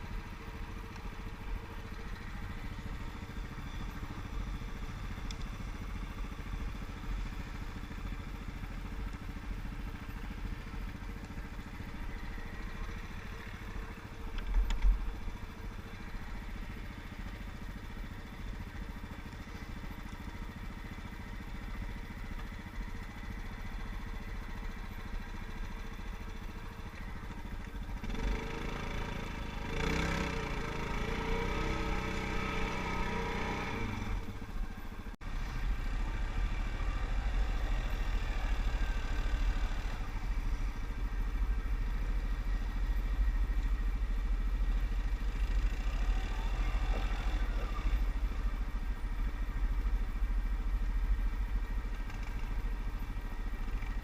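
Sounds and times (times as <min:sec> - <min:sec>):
quad bike engines running: 0:00.0 - 0:54.0
engine revving: 0:28.0 - 0:40.6, 0:45.0 - 0:48.5.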